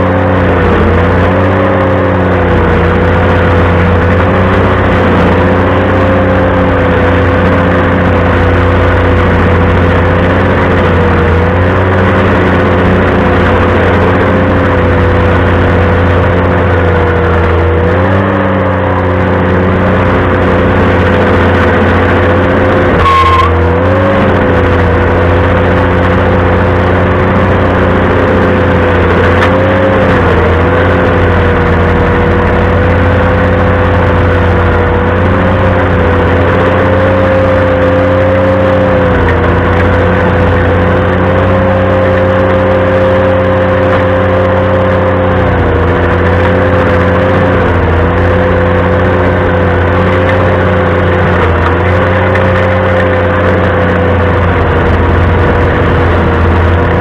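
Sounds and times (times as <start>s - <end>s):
tractor engine running stump grinder: 0.0s - 57.0s
short high-pitched squeak: 22.9s - 23.8s.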